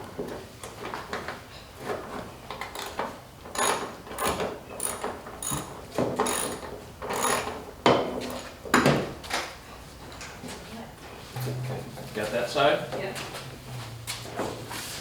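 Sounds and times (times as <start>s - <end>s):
ratchet wrench clicking: 3.6s - 7.5s.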